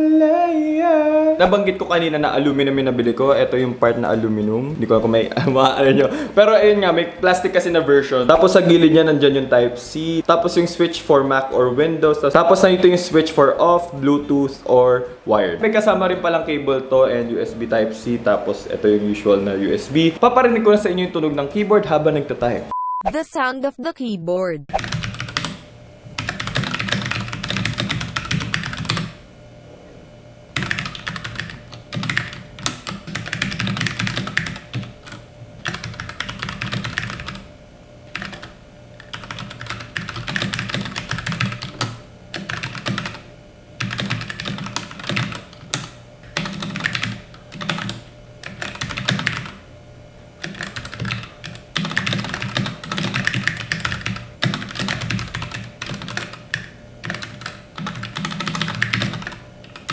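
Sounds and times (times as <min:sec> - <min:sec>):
mechanical keyboard typing: 0:24.8 - 0:29.2, 0:30.6 - 0:37.5, 0:38.1 - 0:43.2, 0:43.8 - 0:49.6, 0:50.4 - 0:59.9.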